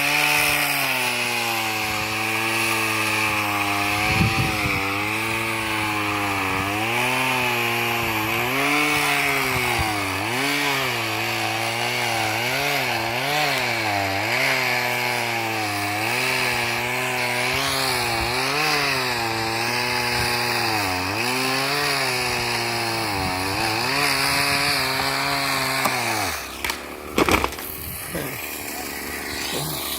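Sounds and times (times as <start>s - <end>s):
chainsaw cutting wood: 0.0s - 29.9s
sharp cracking knocks: 26.6s - 27.8s.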